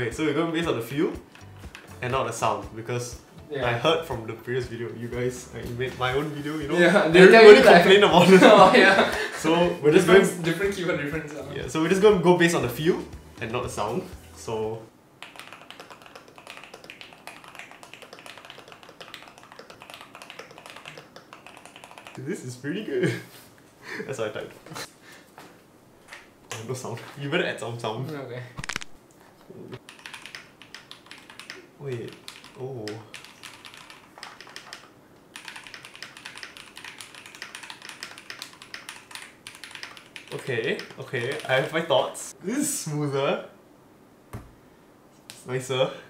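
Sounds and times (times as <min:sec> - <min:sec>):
fast typing on mechanical keyboard: 0:15.2 - 0:22.2, 0:29.8 - 0:41.9.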